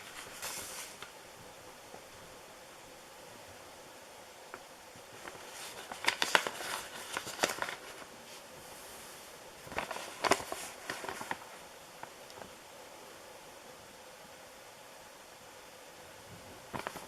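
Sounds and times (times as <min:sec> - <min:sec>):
rustling handling noise: 0:00.0 - 0:02.3, 0:04.5 - 0:12.6, 0:16.4 - 0:17.0
faint steady hiss: 0:00.0 - 0:17.0.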